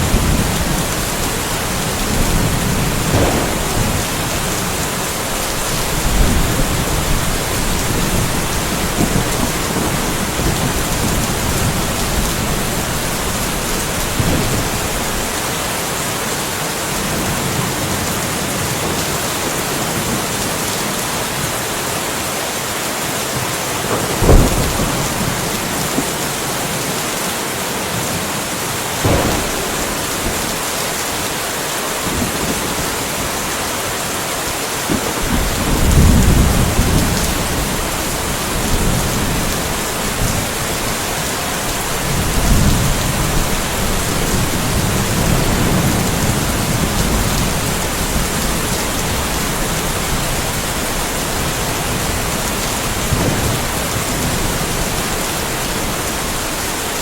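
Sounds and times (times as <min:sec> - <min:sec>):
low thunder rumble: 0:00.0 - 0:15.4, 0:23.9 - 0:26.2, 0:29.0 - 0:33.3, 0:34.9 - 0:57.0
thunder cracks: 0:00.0 - 0:15.4, 0:23.9 - 0:26.2, 0:29.0 - 0:33.0, 0:34.9 - 0:56.6
steady rain: 0:00.0 - 0:57.0.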